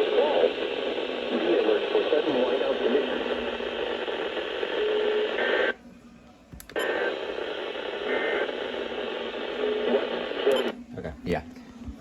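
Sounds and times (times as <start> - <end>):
radio static hiss: 0.0 - 5.8, 6.8 - 10.8
faint radio tones: 0.0 - 12.0.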